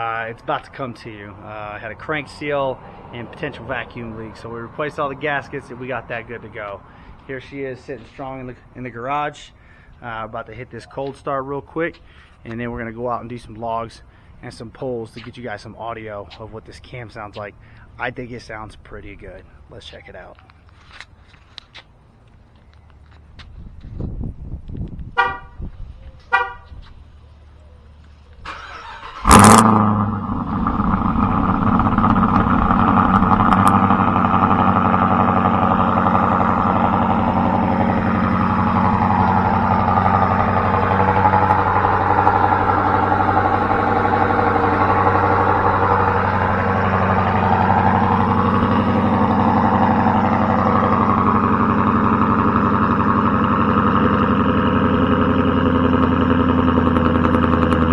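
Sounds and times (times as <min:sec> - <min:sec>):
engine starting and idling: 0:28.4 - 0:57.9.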